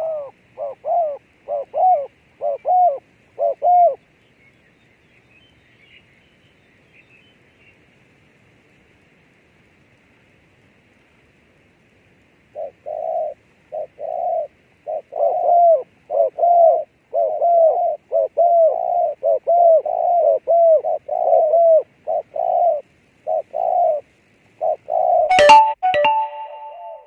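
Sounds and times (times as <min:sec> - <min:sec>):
dove cooing: 0:00.0 - 0:04.0, 0:12.5 - 0:25.3.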